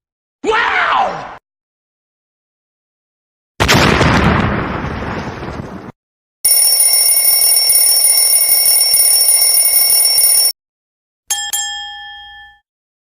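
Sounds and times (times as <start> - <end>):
explosion: 3.6 - 6.0
bell ringing: 6.5 - 10.6, 11.3 - 12.6
bright ding: 11.3 - 12.6.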